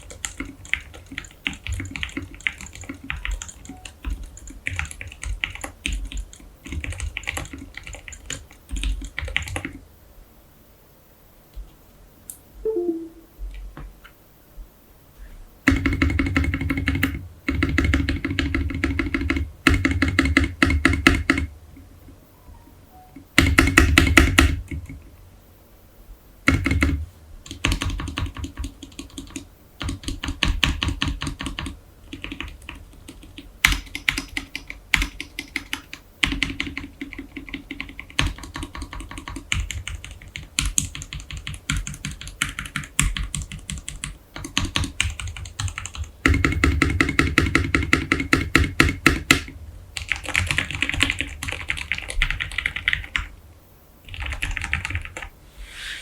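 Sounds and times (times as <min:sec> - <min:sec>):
mechanical keyboard typing: 0:00.0 - 0:09.8, 0:15.7 - 0:21.5, 0:26.5 - 0:53.3, 0:54.1 - 0:55.3.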